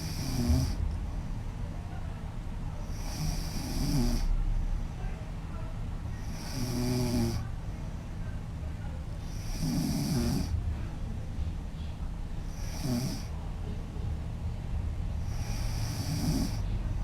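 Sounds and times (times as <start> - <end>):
woman snoring: 0.0 - 0.8, 3.0 - 4.3, 6.3 - 7.4, 9.4 - 10.5, 12.5 - 13.3, 15.3 - 16.6.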